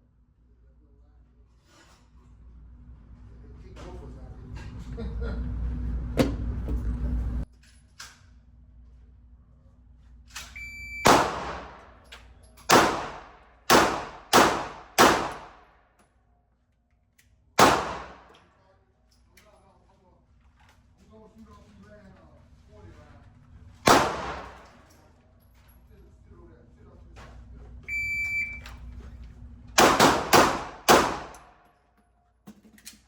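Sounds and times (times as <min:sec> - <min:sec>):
short high beep: 0:10.6 - 0:11.1, 0:27.9 - 0:28.8
handgun shots: 0:11.0 - 0:11.9, 0:12.7 - 0:15.6, 0:17.6 - 0:18.4, 0:23.9 - 0:24.8, 0:29.8 - 0:31.6.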